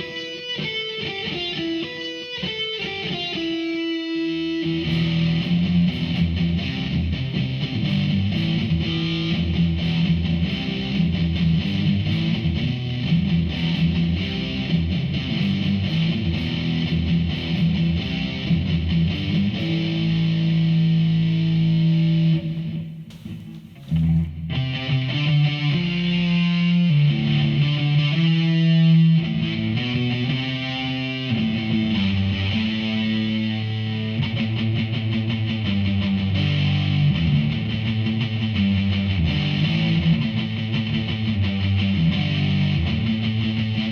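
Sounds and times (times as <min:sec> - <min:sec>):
distorted electric guitar riff: 0:00.0 - 0:22.8.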